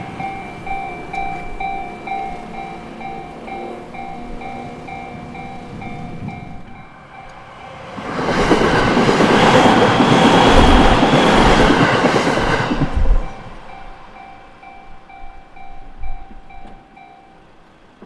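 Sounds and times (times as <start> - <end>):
wheels clacking: 0.0 - 13.9
crossing warning bell ringing: 0.0 - 18.0
train wheels rushing on rail: 0.0 - 18.0.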